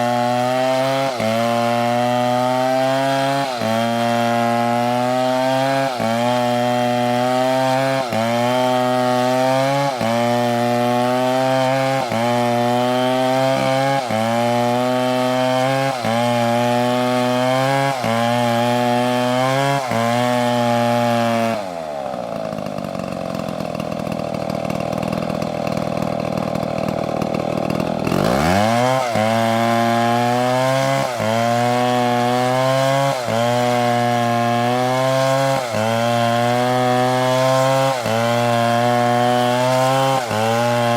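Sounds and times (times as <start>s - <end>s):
chainsaw cutting wood: 0.0s - 40.9s.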